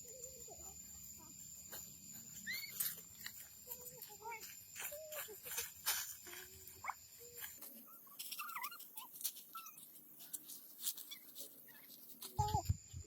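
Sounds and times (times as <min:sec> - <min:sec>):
small animal squeaking: 0:02.4 - 0:03.0, 0:07.9 - 0:09.9.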